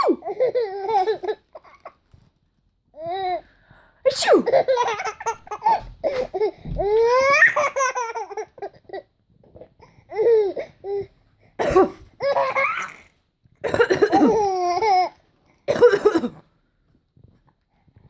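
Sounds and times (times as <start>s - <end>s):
baby giggling: 0.0s - 1.9s, 4.4s - 9.0s, 12.2s - 13.1s, 14.0s - 15.1s
adult fake cough: 4.1s - 4.6s, 11.6s - 12.1s, 13.6s - 14.5s, 15.7s - 16.4s.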